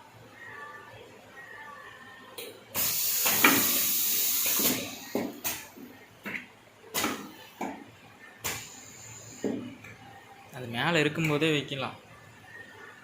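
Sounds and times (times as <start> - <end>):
loud hiss of released air: 2.8 - 5.0.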